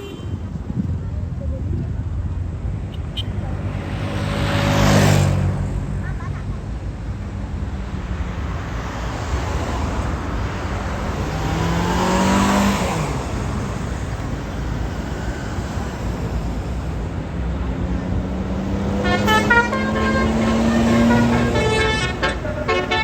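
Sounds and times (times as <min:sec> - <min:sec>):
musical multi-tone bus horn: 0:00.0 - 0:00.6, 0:18.7 - 0:23.0
road traffic noise: 0:00.0 - 0:23.0
vehicle passing close by: 0:03.3 - 0:06.2, 0:07.6 - 0:23.0.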